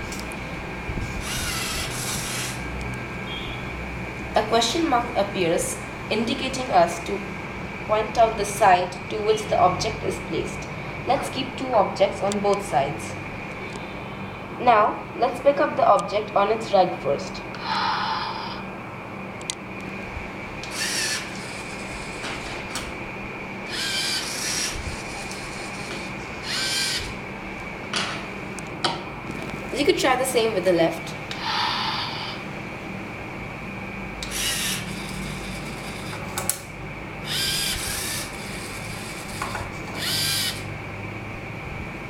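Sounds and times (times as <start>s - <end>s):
faint steady hum: 0.0s - 42.0s
robot arm motors whirring: 1.0s - 2.7s, 20.6s - 22.8s, 23.7s - 27.2s, 34.2s - 36.2s, 37.2s - 40.7s.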